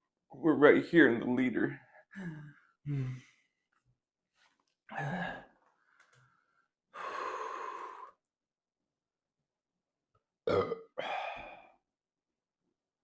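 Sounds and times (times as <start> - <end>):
man breathing hard and sighing: 1.9 - 3.5, 4.9 - 8.2, 11.0 - 11.8.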